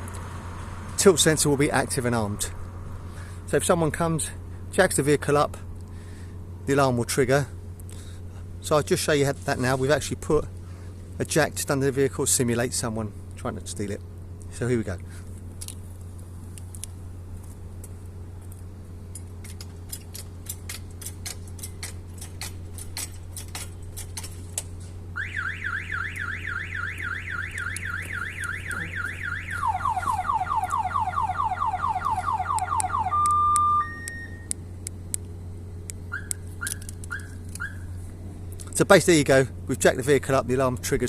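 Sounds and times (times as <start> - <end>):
car alarm warbling siren: 25.2 - 34.5, 36.1 - 37.9
faint short bleeps: 33.2 - 34.5.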